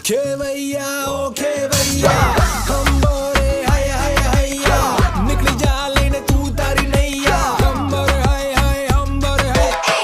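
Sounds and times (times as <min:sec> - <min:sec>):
upbeat song with heavy beat: 0:00.0 - 0:10.0.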